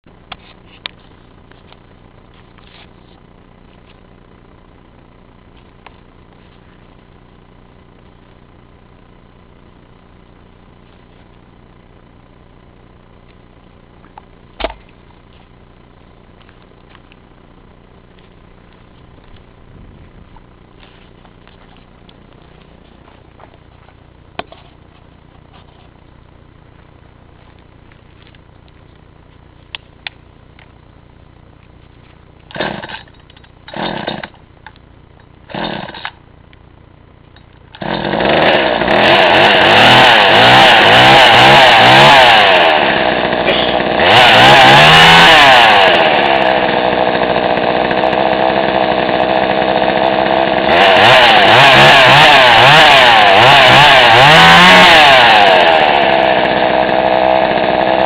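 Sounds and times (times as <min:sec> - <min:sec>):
chainsaw engine revving: 0:32.5 - 0:34.4, 0:35.5 - 0:36.2, 0:37.7 - 0:58.0
chainsaw starter cord pulls: 0:32.5 - 0:34.4, 0:35.5 - 0:36.2, 0:37.7 - 0:58.0.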